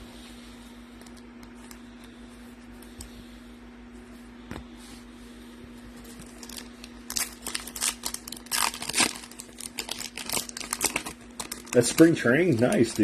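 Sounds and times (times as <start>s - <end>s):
faint steady hum: 0.0s - 13.0s
foil wrapper crinkling and tearing: 6.0s - 13.0s.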